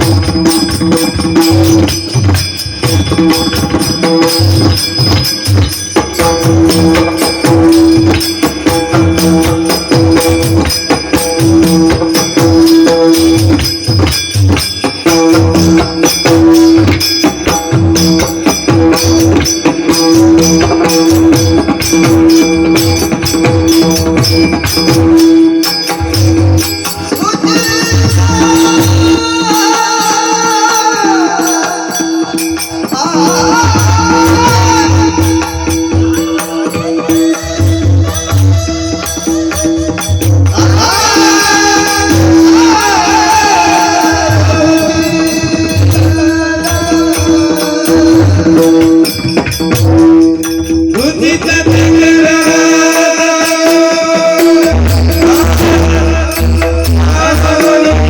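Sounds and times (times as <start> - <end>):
drum strokes: 0.0 - 58.0
jingling hand cymbals: 0.0 - 58.0
man singing: 26.0 - 58.0.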